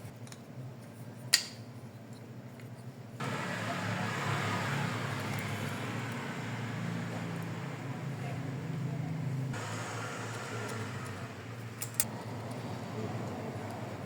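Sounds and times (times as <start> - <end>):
steady noise: 3.2 - 14.0.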